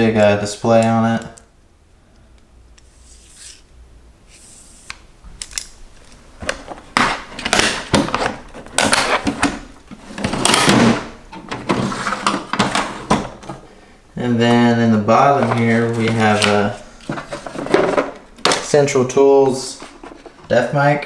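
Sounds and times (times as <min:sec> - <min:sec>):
steel drawers and tools handled: 0:05.4 - 0:13.6.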